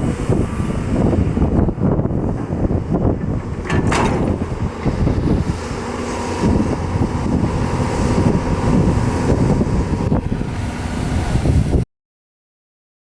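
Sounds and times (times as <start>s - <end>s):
excavator diesel engine under load: 0.0s - 11.8s
low knocks and clunks: 2.1s - 7.7s.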